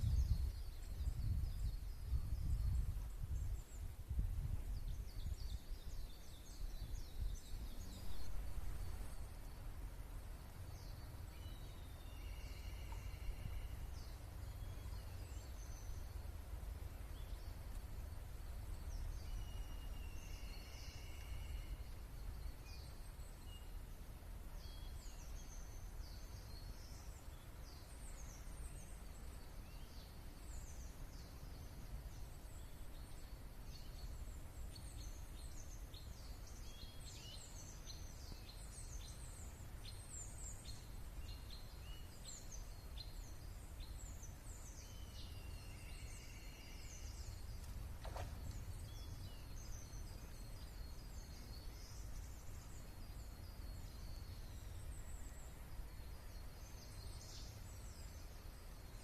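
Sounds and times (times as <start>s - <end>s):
steady low rumble: 0.0s - 12.1s
songbirds chirping: 0.0s - 59.0s.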